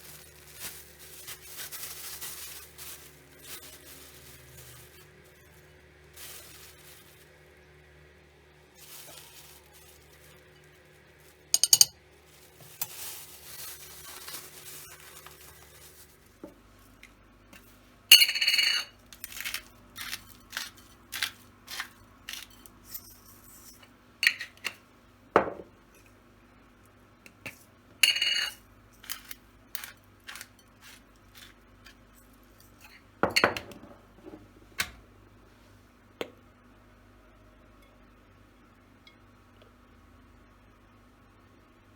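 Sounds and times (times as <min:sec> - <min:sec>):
dishes and cutlery clinking: 0:11.6 - 0:11.9, 0:18.1 - 0:18.9.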